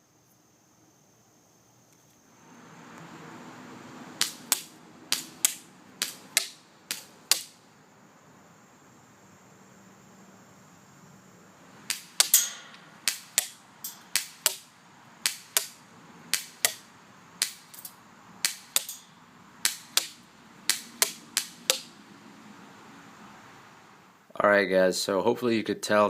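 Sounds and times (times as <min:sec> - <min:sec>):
airsoft gun shots: 0:04.2 - 0:07.6, 0:11.9 - 0:17.8, 0:18.4 - 0:19.0, 0:19.6 - 0:21.9.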